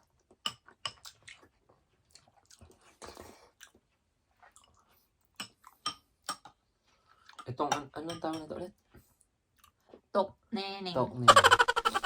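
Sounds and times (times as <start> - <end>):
person chewing: 0.0 - 5.8.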